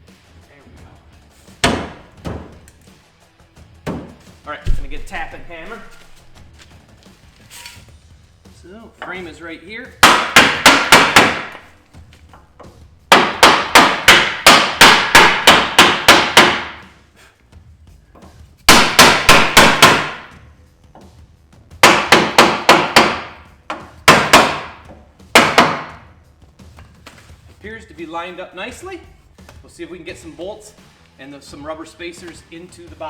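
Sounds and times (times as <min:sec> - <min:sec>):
hammer striking metal: 0:10.0 - 0:11.7, 0:13.1 - 0:16.8, 0:18.7 - 0:20.3, 0:21.8 - 0:24.8.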